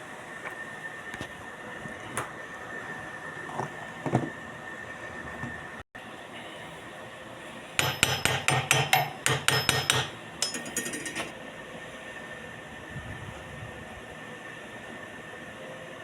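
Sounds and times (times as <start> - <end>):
hammer strikes on steel: 7.8 - 11.3.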